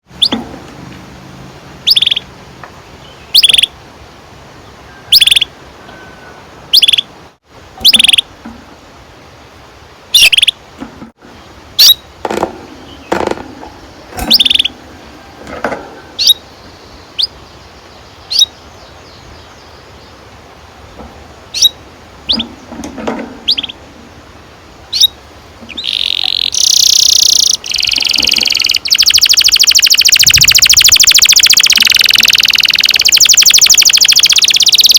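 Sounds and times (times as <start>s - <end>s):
canary chirping and trilling: 0.1s - 0.4s, 1.8s - 2.3s, 3.3s - 3.7s, 5.1s - 5.5s, 6.7s - 7.1s, 7.8s - 8.2s, 10.1s - 10.6s, 11.8s - 12.0s, 13.9s - 14.8s, 16.2s - 16.6s, 18.3s - 18.6s, 21.5s - 23.8s, 24.9s - 34.9s.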